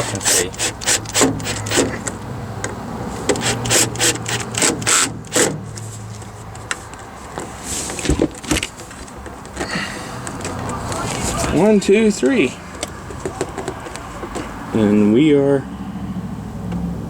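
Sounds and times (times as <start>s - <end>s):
scraping and rubbing strokes: 3.1s - 8.2s.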